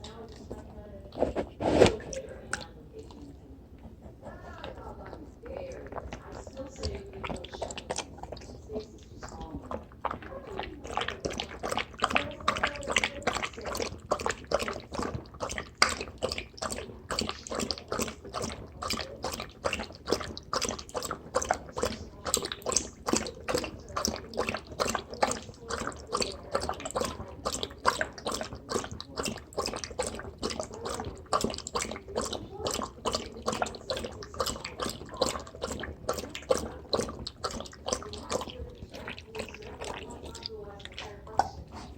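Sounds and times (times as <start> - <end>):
dog lapping water: 0.0 - 41.9.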